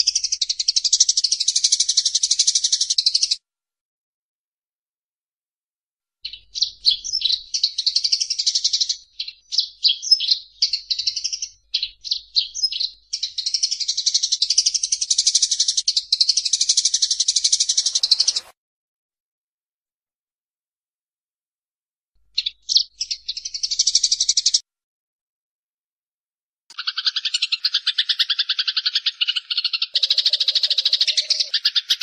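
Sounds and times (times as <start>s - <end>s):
sparrows chirping and chattering: 0.0s - 3.4s, 6.2s - 18.5s, 22.3s - 24.6s, 26.7s - 32.0s.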